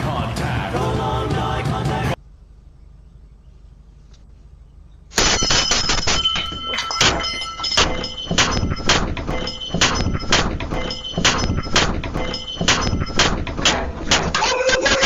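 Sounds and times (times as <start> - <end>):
loud bangs with metallic ring: 5.1 - 14.4.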